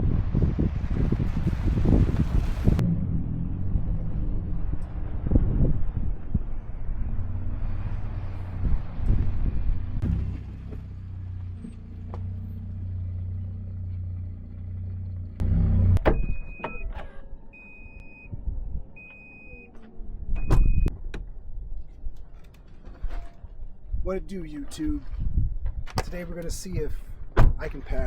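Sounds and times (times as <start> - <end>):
vehicle engine running: 0.0 - 16.0.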